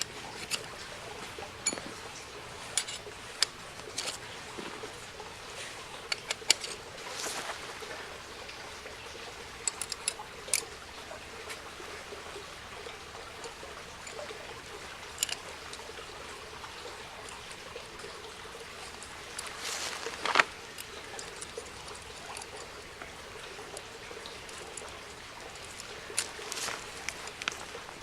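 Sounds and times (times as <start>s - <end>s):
wood fire hissing: 7.0s - 8.9s, 18.8s - 21.5s.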